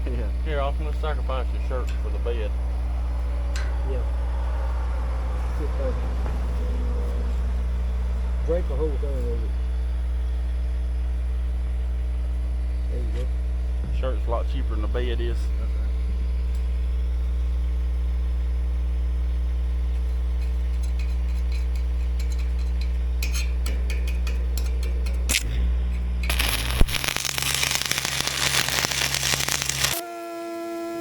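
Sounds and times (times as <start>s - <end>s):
engine running: 0.0s - 30.2s
arc welder crackling: 15.6s - 30.0s.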